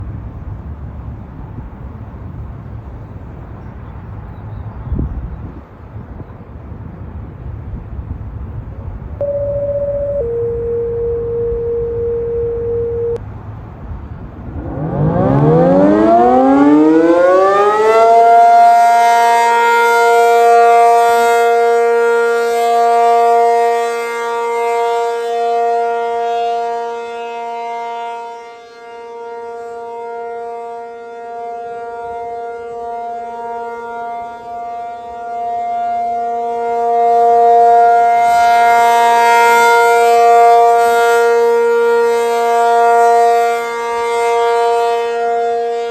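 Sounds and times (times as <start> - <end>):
tornado siren winding up: 9.2 - 13.2, 14.4 - 21.7.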